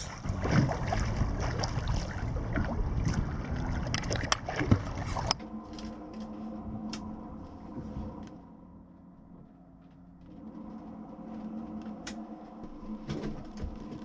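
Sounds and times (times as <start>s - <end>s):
water noise under a sailboat: 0.0s - 8.4s
wind on microphone: 0.0s - 8.4s
faint steady hum: 0.0s - 14.0s.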